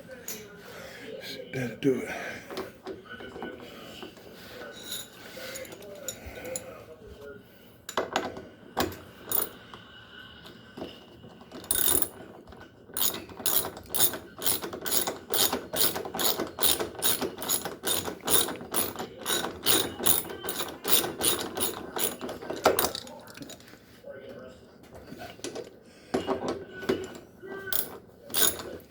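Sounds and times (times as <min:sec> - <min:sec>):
ratchet wrench clicking: 0:09.3 - 0:09.5, 0:11.6 - 0:12.2, 0:13.0 - 0:22.2, 0:27.7 - 0:28.7.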